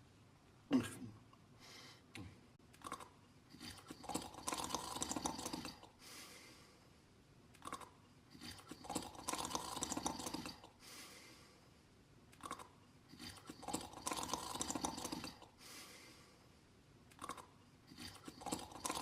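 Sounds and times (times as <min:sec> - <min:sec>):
rattling snoring inhales: 0:03.5 - 0:06.9, 0:08.3 - 0:11.8, 0:12.5 - 0:16.5, 0:17.2 - 0:19.0
breathy exhale: 0:06.0 - 0:07.0, 0:10.8 - 0:11.8, 0:15.6 - 0:16.6.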